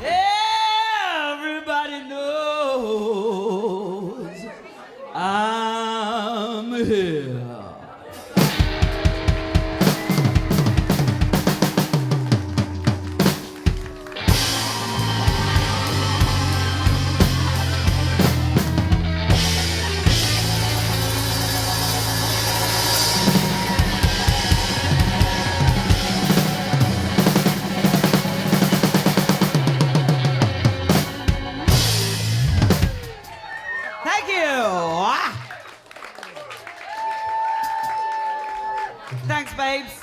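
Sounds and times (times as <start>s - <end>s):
drum kit: 8.2s - 33.4s
blues band playing: 8.3s - 33.4s
held bass notes: 8.8s - 33.2s.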